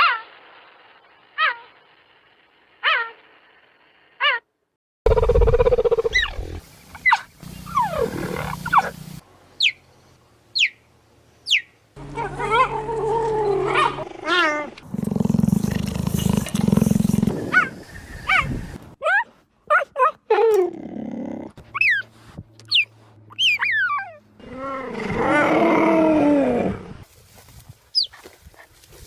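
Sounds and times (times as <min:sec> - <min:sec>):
low rasping growls: 0:12.0 - 0:17.8, 0:24.4 - 0:27.0.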